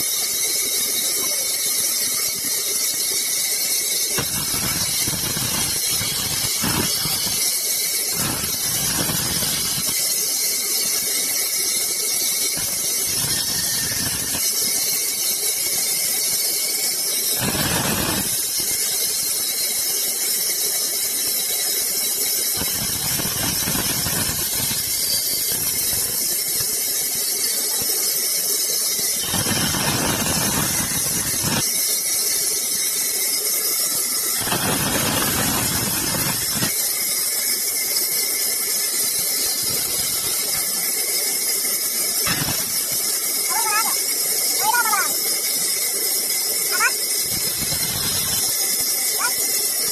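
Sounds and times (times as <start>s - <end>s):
sawmill saw cutting wood: 3.6s - 10.0s, 12.5s - 14.8s, 22.6s - 26.8s, 29.2s - 31.7s, 34.4s - 36.8s.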